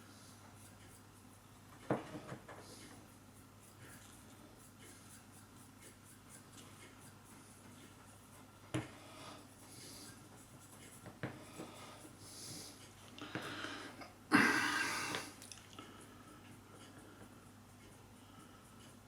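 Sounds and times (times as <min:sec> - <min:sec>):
brush scratching on metal: 0:00.0 - 0:01.7, 0:02.6 - 0:08.7, 0:09.3 - 0:12.9.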